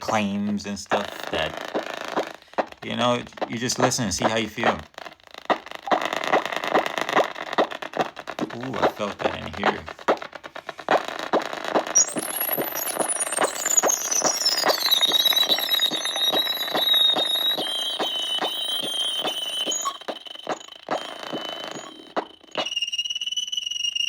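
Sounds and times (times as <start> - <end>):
high piercing ringing tone: 11.9 - 24.0.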